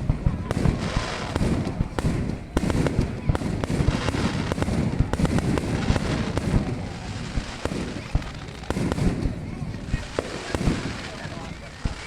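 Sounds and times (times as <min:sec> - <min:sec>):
fireworks bangs and crackling: 0:00.0 - 0:12.0.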